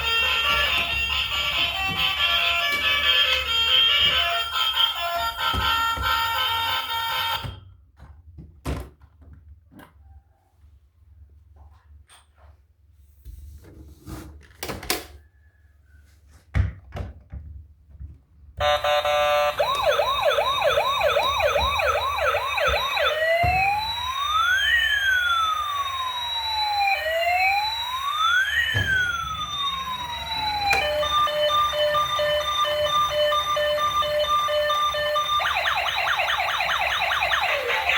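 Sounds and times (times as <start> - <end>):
toy electronic siren: 0.0 - 7.6, 18.6 - 37.9.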